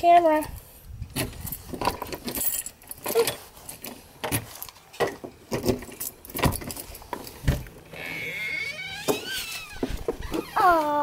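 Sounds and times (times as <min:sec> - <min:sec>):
light metallic jangle: 0:01.4 - 0:03.4.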